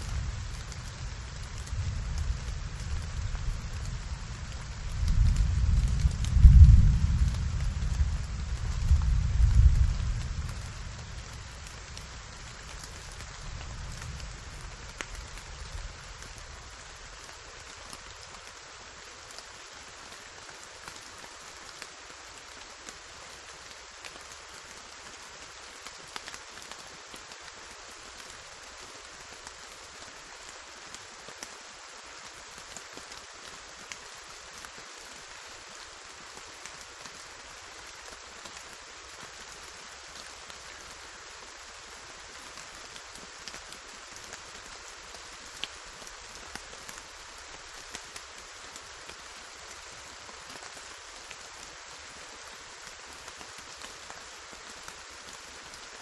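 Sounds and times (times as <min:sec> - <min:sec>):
low thunder rumble: 0:00.0 - 0:16.2
heavy rain hissing: 0:00.0 - 0:56.0
raindrops ticking on a surface: 0:00.0 - 0:56.0.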